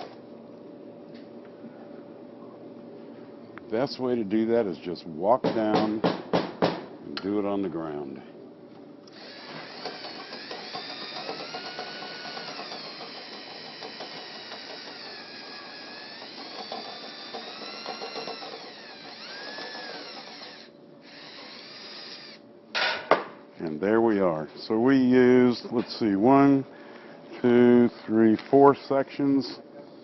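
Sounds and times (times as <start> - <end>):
power drill spinning brush: 9.2 - 22.4.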